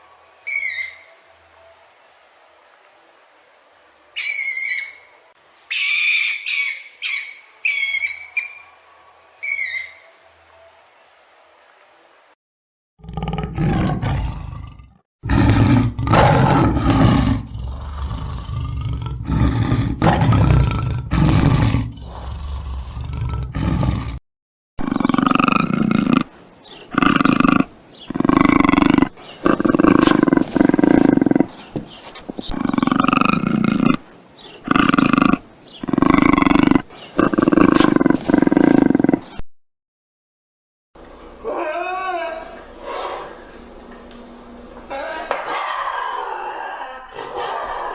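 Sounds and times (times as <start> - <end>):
large animal roaring: 13.0 - 24.2, 24.8 - 26.3, 26.9 - 31.5, 32.5 - 34.0, 34.6 - 39.3.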